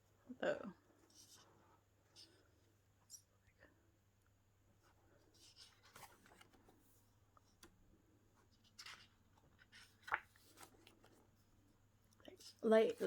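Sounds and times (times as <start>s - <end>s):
paper pages rustling: 5.3s - 7.7s, 8.4s - 11.5s.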